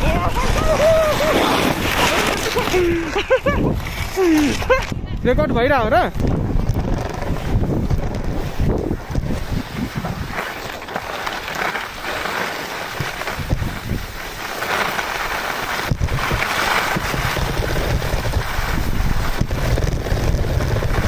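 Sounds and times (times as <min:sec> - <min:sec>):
wind buffeting microphone: 0:00.0 - 0:10.4, 0:13.0 - 0:14.2, 0:15.8 - 0:21.0.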